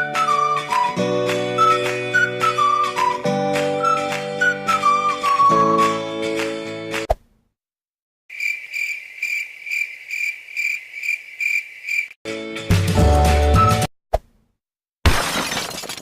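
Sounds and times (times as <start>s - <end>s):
music clip: 0.0s - 7.1s
crickets chirping: 8.3s - 12.2s.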